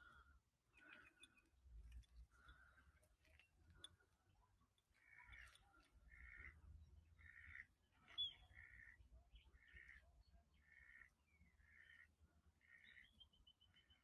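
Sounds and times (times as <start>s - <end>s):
bird chirp: 0.0s - 14.0s
faint crow cawing: 2.3s - 4.2s, 4.9s - 7.8s, 8.4s - 9.0s, 9.6s - 10.0s, 10.6s - 13.0s.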